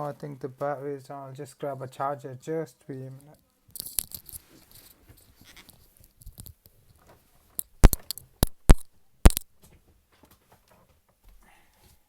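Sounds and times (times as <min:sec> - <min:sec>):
faint rustling: 0:03.2 - 0:08.4.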